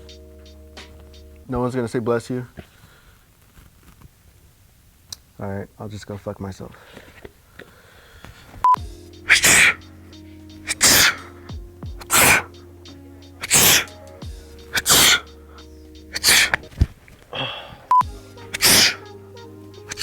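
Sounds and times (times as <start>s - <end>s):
background music: 0.0s - 1.6s, 8.8s - 16.8s, 18.0s - 20.0s
man sneezing loudly: 9.3s - 9.8s, 10.7s - 11.3s, 12.1s - 12.5s, 13.4s - 13.9s, 14.8s - 15.2s, 16.2s - 16.6s.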